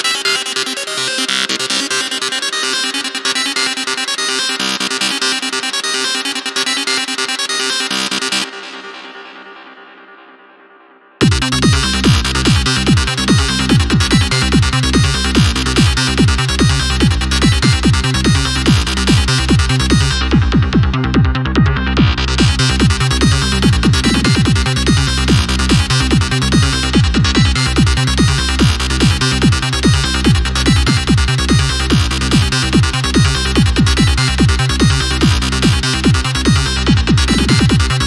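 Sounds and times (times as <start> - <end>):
trance music: 0.0 - 38.0
kick drum: 11.2 - 38.0
synth lead: 11.2 - 38.0.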